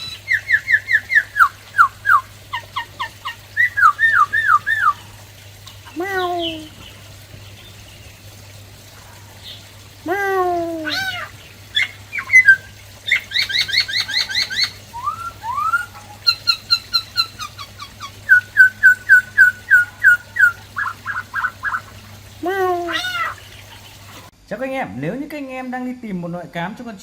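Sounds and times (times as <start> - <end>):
bird singing whistled phrases: 0.0 - 2.3, 3.6 - 5.0, 10.9 - 21.9.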